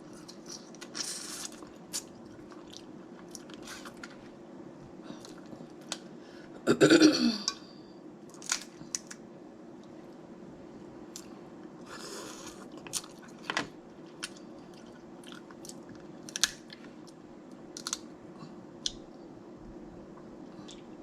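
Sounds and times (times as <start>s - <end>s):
crab shell cracking: 16.2s - 16.7s.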